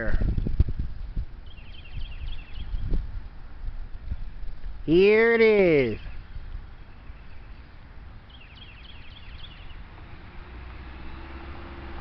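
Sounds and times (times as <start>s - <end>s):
high bird chirps: 1.4s - 3.0s, 5.8s - 9.9s.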